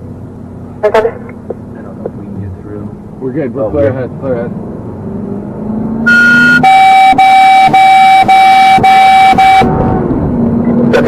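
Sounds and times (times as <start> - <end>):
engine running: 0.0 - 11.0
vehicle horn blasts: 6.1 - 9.8
short high beep: 6.1 - 9.9.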